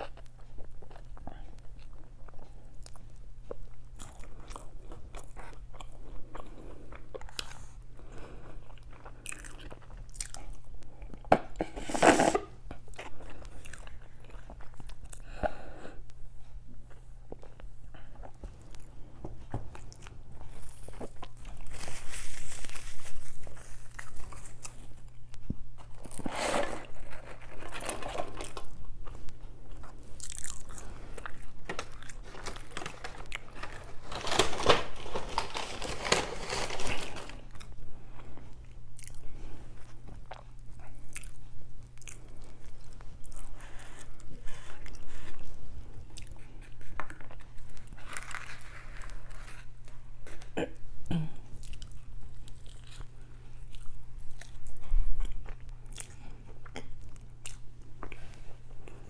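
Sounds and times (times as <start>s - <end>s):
wet chewing and biting: 28.5s - 33.9s.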